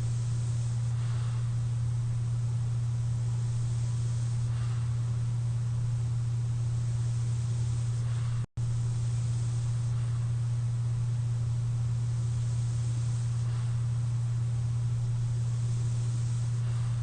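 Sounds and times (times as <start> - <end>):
cpap machine hum and hiss: 0.0 - 17.0.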